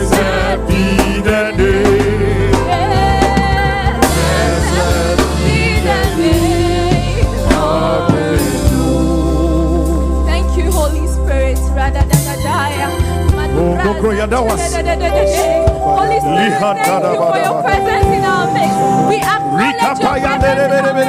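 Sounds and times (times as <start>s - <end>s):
voices singing with vibrato: 0.0s - 10.2s
bass: 0.0s - 21.0s
drum kit steady beat: 0.0s - 21.0s.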